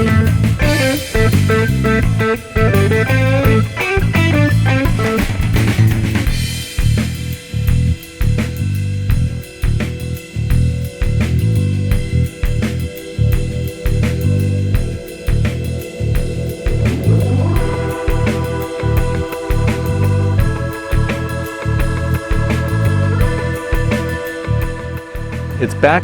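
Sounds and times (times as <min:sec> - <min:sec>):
guitar melody: 0:00.0 - 0:06.4, 0:16.6 - 0:26.0
drum kit beat: 0:00.0 - 0:26.0.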